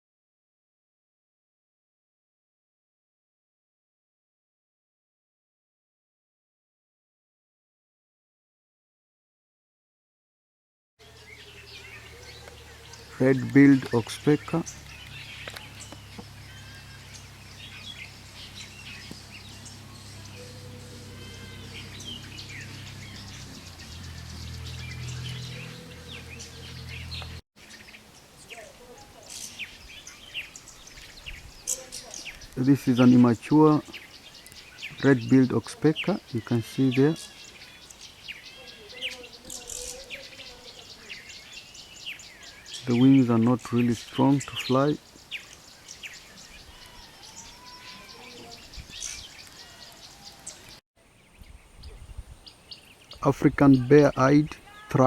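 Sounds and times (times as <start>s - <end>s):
birds chirping: 11.0s - 55.0s
outdoor background noise: 11.0s - 55.0s.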